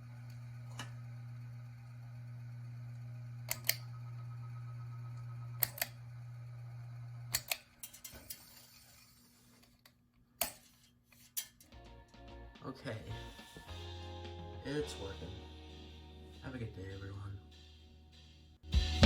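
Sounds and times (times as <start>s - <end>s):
ceiling fan motor humming: 0.0s - 8.0s
pull-chain switch clicks: 3.5s - 3.8s, 5.6s - 6.0s, 7.3s - 8.4s, 10.4s - 10.6s.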